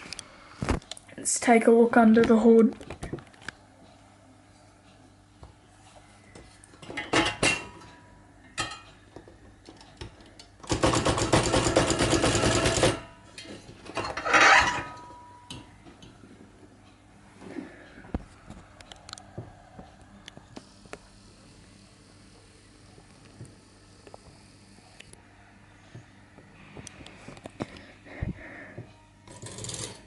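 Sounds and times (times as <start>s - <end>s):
fast mechanical typewriter rattle: 10.6s - 13.0s
typewriter clunks and clatter: 10.6s - 13.0s.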